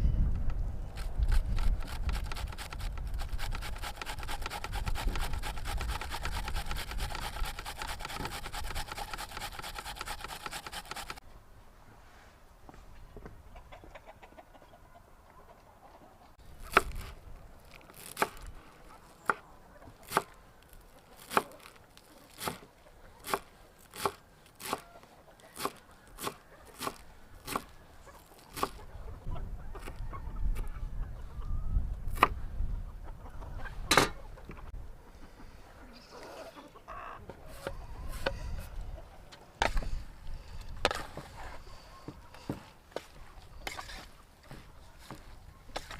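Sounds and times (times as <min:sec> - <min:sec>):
chickens clucking: 0:13.4 - 0:16.4, 0:21.1 - 0:39.6.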